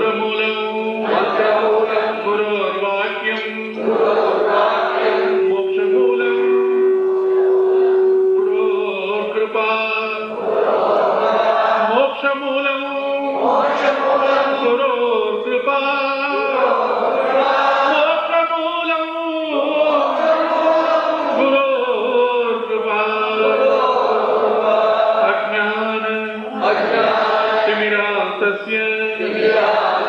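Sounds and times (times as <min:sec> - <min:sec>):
devotional chanting: 0:00.0 - 0:30.0.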